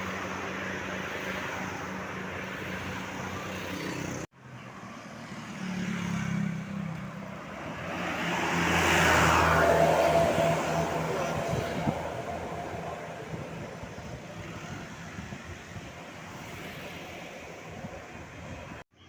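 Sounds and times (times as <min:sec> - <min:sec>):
bus passing by: 0:00.0 - 0:18.9
bus engine running: 0:07.1 - 0:16.3.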